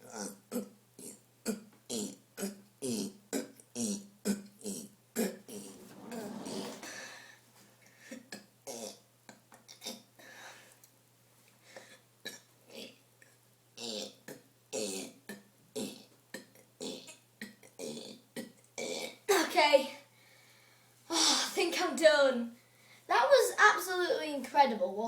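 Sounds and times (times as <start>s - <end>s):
child burping: 0.0s - 7.1s, 8.2s - 10.1s, 13.8s - 19.5s.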